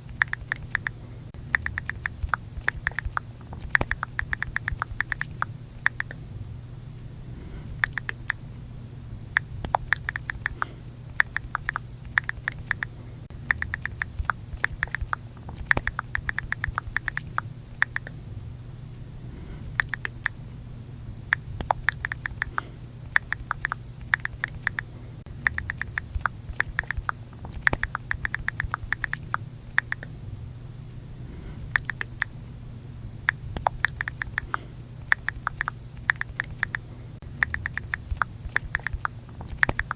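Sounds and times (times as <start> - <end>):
steady low hum: 0.0 - 39.9
phone keyboard clicks: 0.1 - 0.9, 1.6 - 6.2, 9.6 - 12.9, 13.5 - 18.1, 21.6 - 22.6, 23.2 - 24.8, 25.5 - 30.1, 33.6 - 36.8, 37.4 - 39.9.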